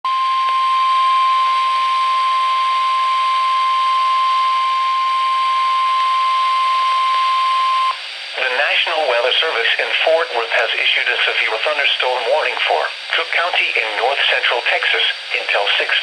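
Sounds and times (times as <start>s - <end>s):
steady loud alarm beep: 0.1s - 8.0s
faint radio hiss: 8.0s - 16.0s.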